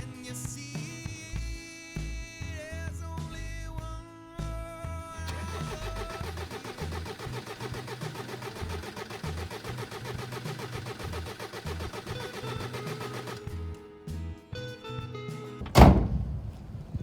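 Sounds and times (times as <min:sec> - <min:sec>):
diesel engine cranking on starter: 0:05.3 - 0:13.7.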